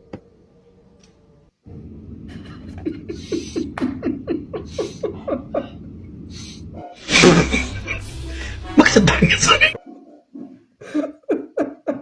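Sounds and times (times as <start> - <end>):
person laughing hard: 2.3 - 5.8, 7.0 - 8.6.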